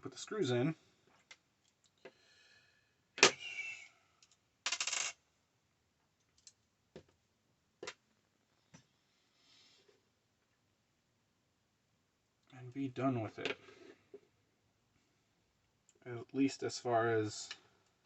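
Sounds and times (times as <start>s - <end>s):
small parts rattling: 4.2s - 5.2s.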